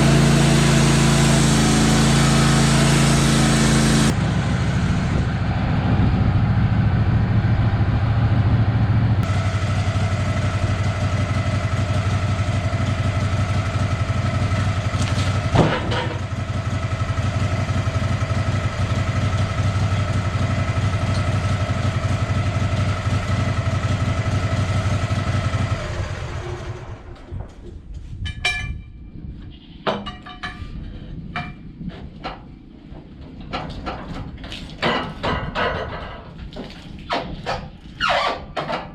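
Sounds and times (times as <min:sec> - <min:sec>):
engine running: 0:00.0 - 0:27.9
knocks and clatters: 0:14.6 - 0:16.4, 0:29.8 - 0:38.9.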